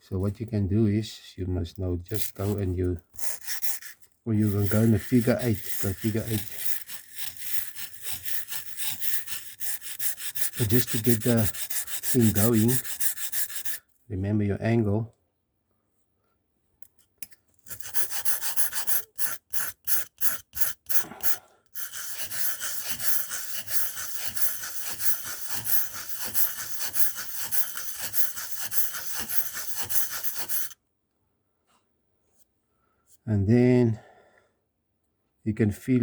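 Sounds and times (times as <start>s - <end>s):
blade rasping on sharpening stone: 2.1s - 13.9s, 17.2s - 30.8s.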